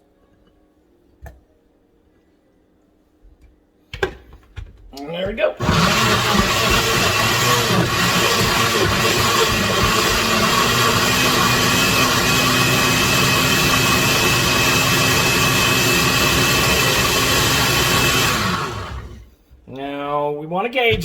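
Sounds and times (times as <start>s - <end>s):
blender motor whining: 5.6s - 19.3s.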